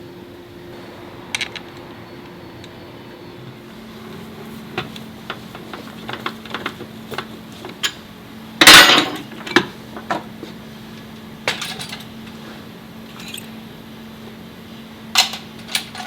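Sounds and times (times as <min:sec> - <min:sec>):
metal tools clinking: 0:08.6 - 0:10.2, 0:11.4 - 0:12.1, 0:13.1 - 0:13.6, 0:15.2 - 0:16.0.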